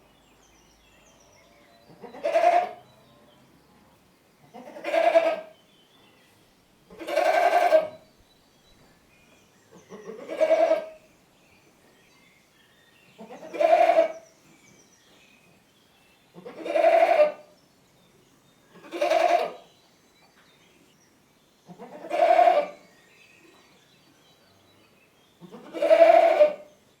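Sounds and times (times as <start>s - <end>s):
goat bleating: 7.0s - 8.0s, 10.1s - 10.9s, 16.5s - 17.4s, 18.8s - 19.6s, 21.8s - 22.8s, 25.5s - 26.6s.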